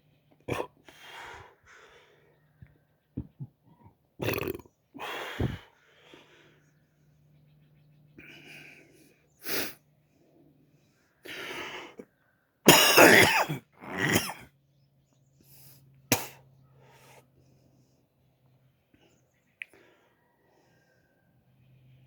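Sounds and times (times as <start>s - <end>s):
person coughing: 12.7s - 14.4s, 16.1s - 16.4s.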